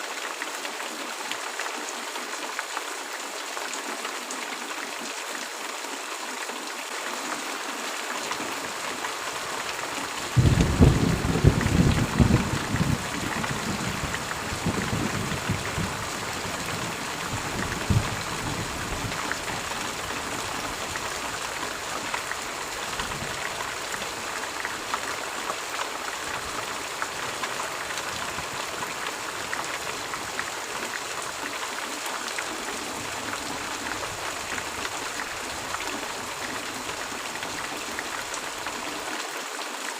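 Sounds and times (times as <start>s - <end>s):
steady rain falling: 0.0s - 39.9s
low roll of thunder: 10.4s - 19.2s.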